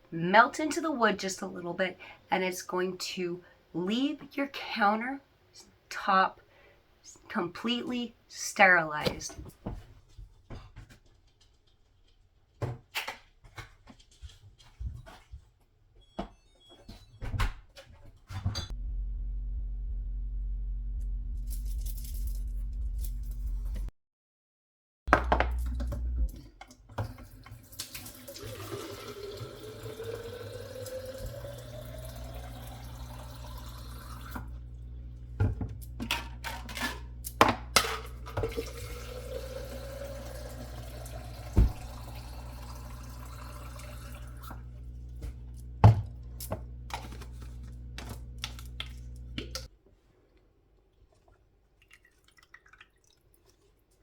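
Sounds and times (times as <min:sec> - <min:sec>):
tap running into container: 0:35.4 - 0:44.6.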